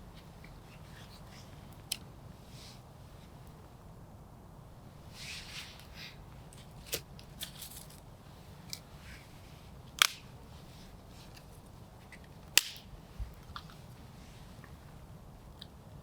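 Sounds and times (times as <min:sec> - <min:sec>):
campfire crackling and popping: 0:10.0 - 0:10.3, 0:12.5 - 0:13.7.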